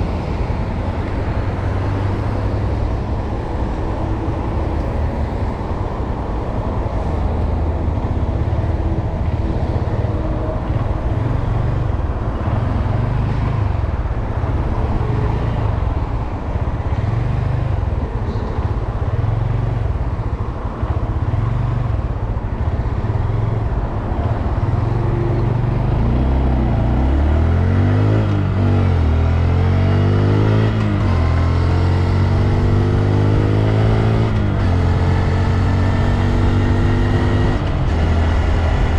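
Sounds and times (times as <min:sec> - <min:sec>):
motorcycle engine running: 0:00.0 - 0:09.7
road noise: 0:00.0 - 0:38.9
rushing wind: 0:00.0 - 0:38.9.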